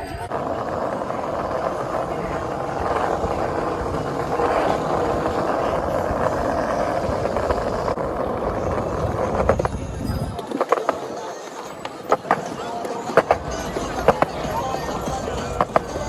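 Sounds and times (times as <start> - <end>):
skate wheels rolling on pavement: 0.0 - 16.0.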